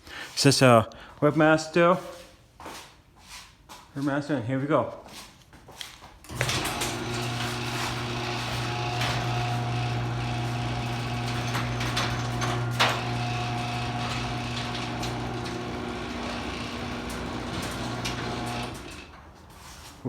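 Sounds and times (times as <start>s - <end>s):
door rattling and clicking: 6.3s - 19.2s
garage door opener click: 6.3s - 19.3s
garage door motor humming: 6.3s - 19.4s.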